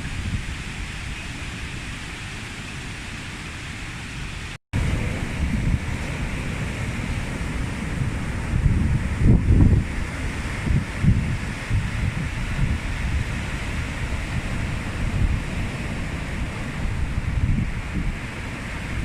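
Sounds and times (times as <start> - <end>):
wind buffeting microphone: 0.0 - 2.1, 4.8 - 19.0
storm surf: 0.0 - 19.0
strong wind: 0.0 - 19.0.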